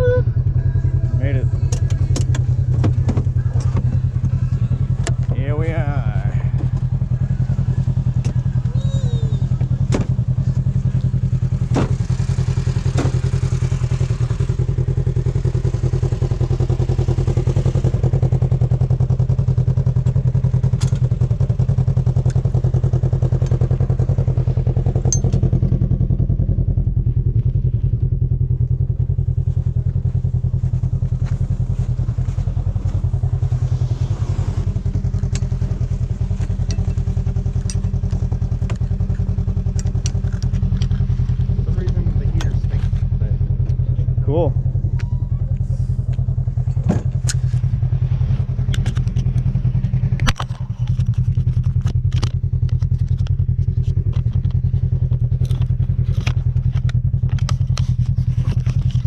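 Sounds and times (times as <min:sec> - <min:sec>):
engine running with fast pulse: 0:00.0 - 0:59.0
sharp knocks and rattles: 0:25.0 - 0:25.8.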